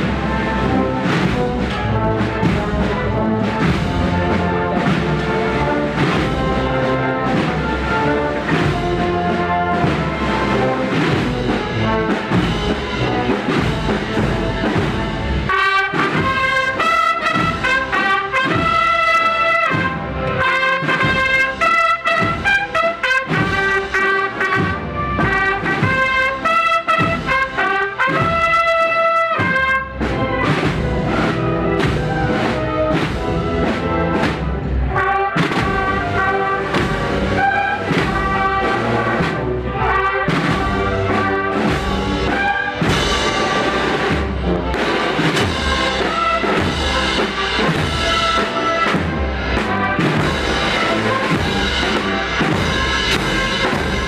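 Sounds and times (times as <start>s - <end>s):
brass and drum march: 0.0s - 54.0s
brass melody: 0.0s - 54.0s
heavy drumming: 0.0s - 54.0s.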